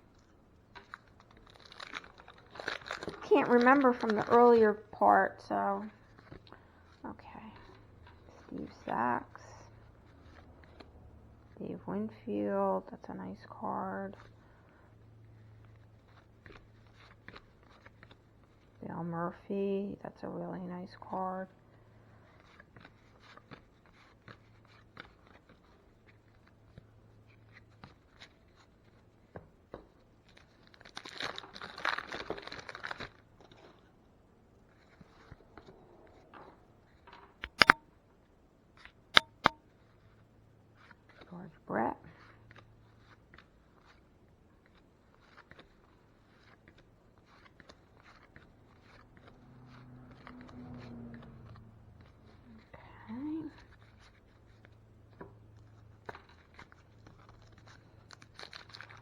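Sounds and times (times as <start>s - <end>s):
wrapper crinkling and tearing: 0.2s - 4.6s, 30.3s - 33.6s, 56.3s - 59.0s
cards clicking and tapping: 37.4s - 37.8s, 39.2s - 39.6s.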